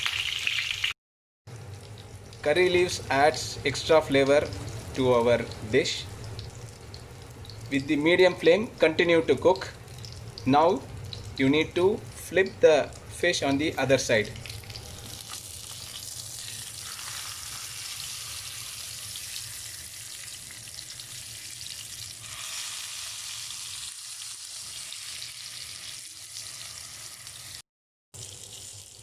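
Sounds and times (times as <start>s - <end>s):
fish sizzling in a frying pan: 0.0s - 0.9s, 14.7s - 27.6s.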